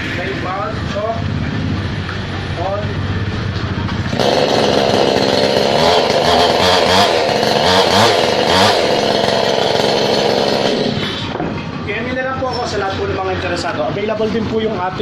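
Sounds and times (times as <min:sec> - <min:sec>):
chainsaw revving: 0:04.1 - 0:11.3.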